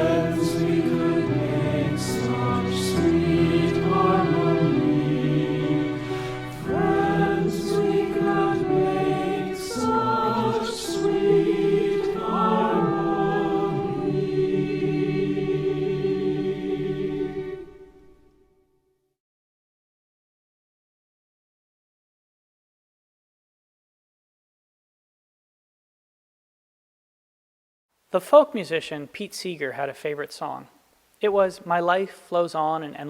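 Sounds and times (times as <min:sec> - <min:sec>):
mixed choir singing: 0:00.0 - 0:18.1.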